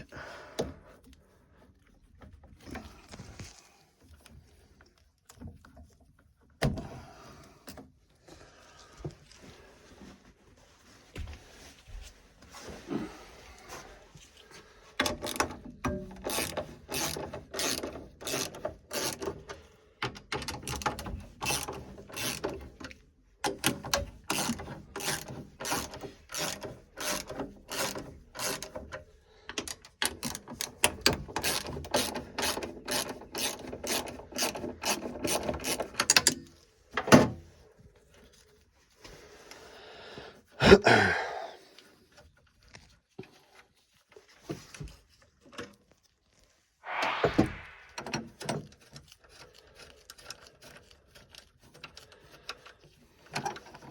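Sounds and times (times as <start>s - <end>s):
sharp knock: 46.9s - 48.1s.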